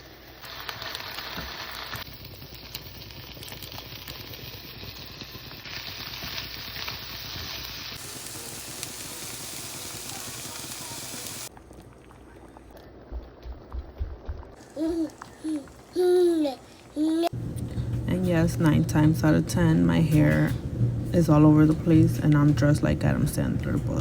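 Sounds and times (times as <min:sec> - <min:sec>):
food sizzling in a pan: 0:00.0 - 0:11.5.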